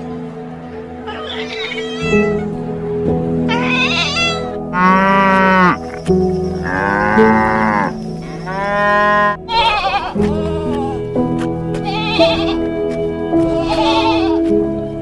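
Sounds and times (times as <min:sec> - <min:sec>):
background music with drone: 0:00.0 - 0:15.0
farm animals calling: 0:01.0 - 0:02.4, 0:03.5 - 0:11.1, 0:11.8 - 0:12.7, 0:13.4 - 0:14.4.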